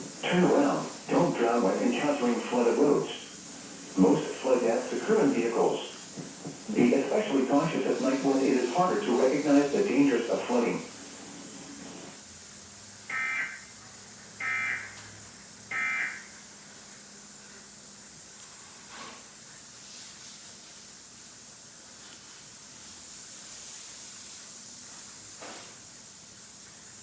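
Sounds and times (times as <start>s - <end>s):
steady hiss: 0.0s - 27.0s
alert data tone bursts: 13.1s - 13.8s, 14.4s - 15.0s, 15.7s - 16.3s.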